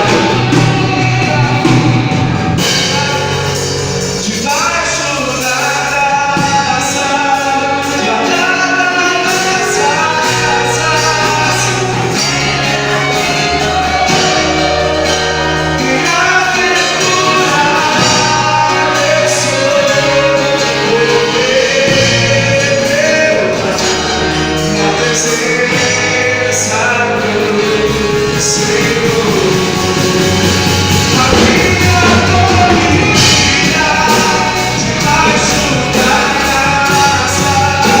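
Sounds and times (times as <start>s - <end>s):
bass: 0.0s - 38.0s
drums with cymbals: 0.0s - 38.0s
gospel band playing: 0.0s - 38.0s
sung vocals: 0.0s - 38.0s.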